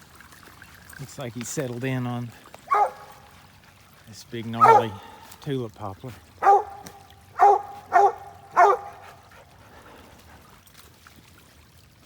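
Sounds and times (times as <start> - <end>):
dog barking: 2.7 - 3.2, 4.6 - 5.0, 6.4 - 9.2.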